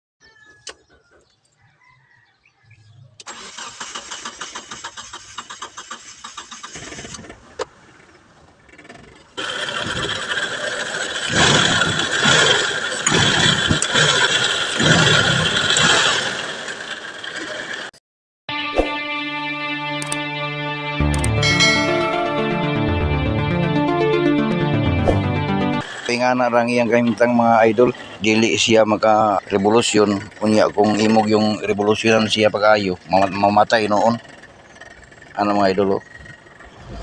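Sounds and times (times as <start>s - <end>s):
car engine cranking: 3.2s - 8.1s, 8.7s - 17.8s, 25.8s - 36.9s.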